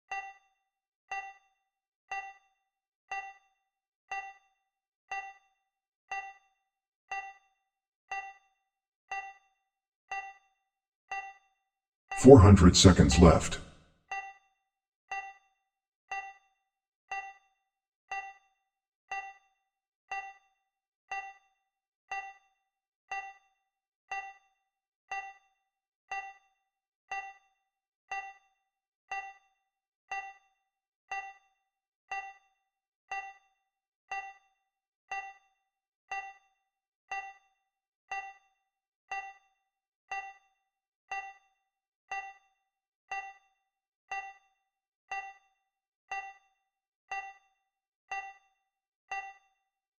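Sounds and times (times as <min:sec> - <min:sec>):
electronic clock tick: 0:00.1 - 0:00.5, 0:01.1 - 0:01.5, 0:02.1 - 0:02.5, 0:03.1 - 0:04.5, 0:05.1 - 0:09.5, 0:10.1 - 0:10.5, 0:11.1 - 0:11.4, 0:12.2 - 0:14.3, 0:16.1 - 0:16.4, 0:17.1 - 0:17.4, 0:18.1 - 0:18.4, 0:19.1 - 0:19.4, 0:20.1 - 0:20.4, 0:21.1 - 0:21.4, 0:22.1 - 0:22.4, 0:23.1 - 0:23.4, 0:24.1 - 0:24.4, 0:25.1 - 0:25.5, 0:26.1 - 0:26.5, 0:27.1 - 0:27.5, 0:28.1 - 0:28.4, 0:29.1 - 0:29.4, 0:30.1 - 0:30.5, 0:31.1 - 0:31.5, 0:32.1 - 0:32.5, 0:33.1 - 0:33.5, 0:34.1 - 0:34.5, 0:35.1 - 0:35.5, 0:36.1 - 0:36.5, 0:37.1 - 0:37.5, 0:38.1 - 0:38.5, 0:39.1 - 0:39.5, 0:40.1 - 0:40.5, 0:41.1 - 0:41.5, 0:42.1 - 0:42.5, 0:43.1 - 0:43.5, 0:44.1 - 0:44.5, 0:45.1 - 0:45.5, 0:46.1 - 0:46.5, 0:47.1 - 0:47.5, 0:48.1 - 0:48.5, 0:49.1 - 0:49.5.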